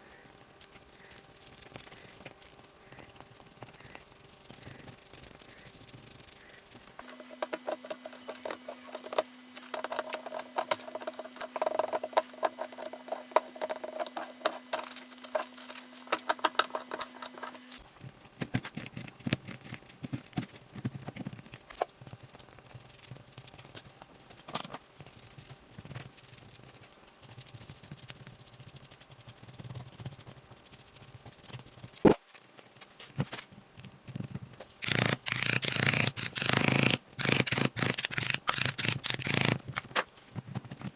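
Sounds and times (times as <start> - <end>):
tool scraping plaster: 1.0 - 17.8, 18.4 - 21.9, 34.7 - 40.9.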